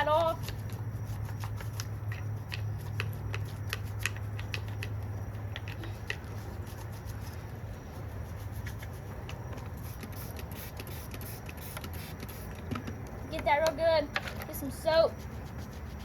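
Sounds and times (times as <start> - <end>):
steady low hum: 14.6 - 16.0.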